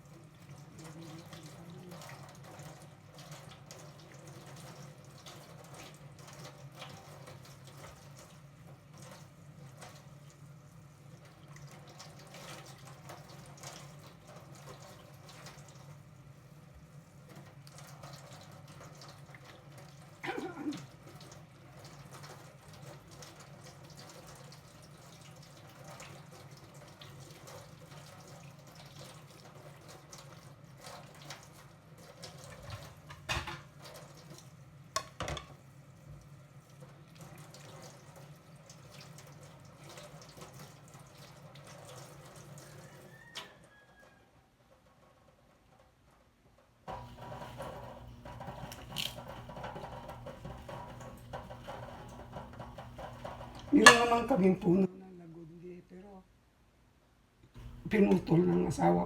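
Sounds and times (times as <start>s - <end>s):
tap water running into sink: 0.0s - 16.2s, 16.8s - 43.8s, 46.9s - 54.9s, 57.6s - 59.0s
water drips and splashes: 0.0s - 43.6s.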